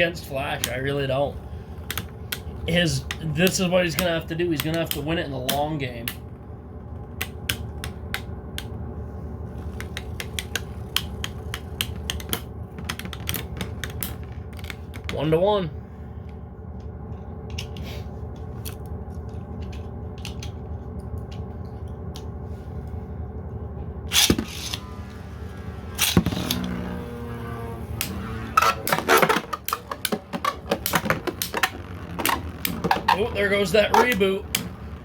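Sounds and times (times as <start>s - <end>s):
spinning tops whirring: 24.1s - 35.0s.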